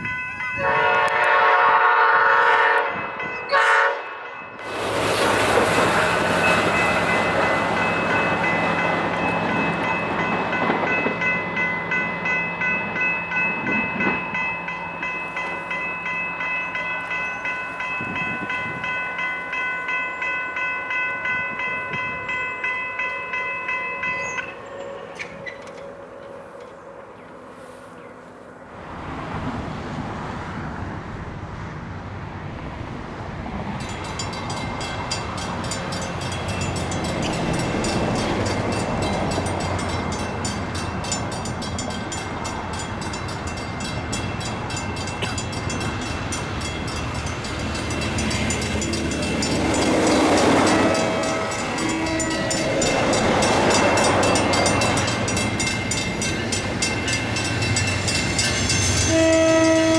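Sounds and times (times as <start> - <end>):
crossing signal bell ringing: 0.0 - 28.3, 33.8 - 59.9
train horn blasts: 0.6 - 4.4, 49.9 - 55.4, 58.8 - 59.9.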